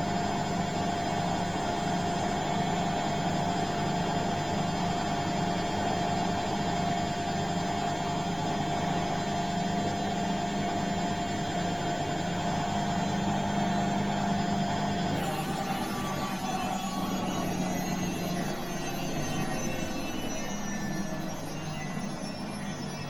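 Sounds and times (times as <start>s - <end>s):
thin steady whine: 0.6s - 23.0s
washing machine motor hum: 11.7s - 23.0s.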